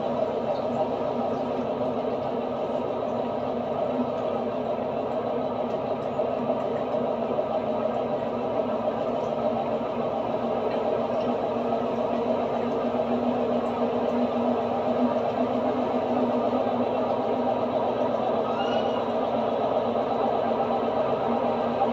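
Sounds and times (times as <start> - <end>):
washing machine drone: 0.0 - 21.9.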